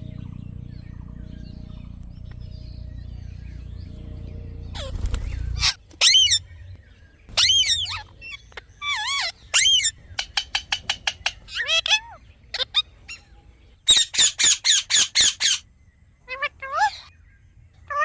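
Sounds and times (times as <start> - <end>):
low rumbling noise: 0.0 - 8.2
parrot squawking: 4.7 - 6.4, 7.3 - 13.2, 13.9 - 15.6.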